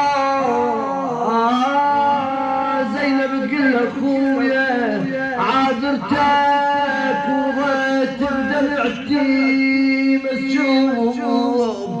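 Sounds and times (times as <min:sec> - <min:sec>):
man singing a mournful lament: 0:00.0 - 0:12.0.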